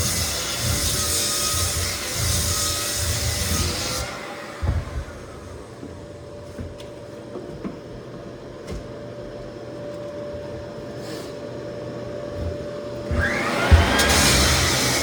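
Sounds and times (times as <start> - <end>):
floor sander motor whine: 12.0 - 15.0.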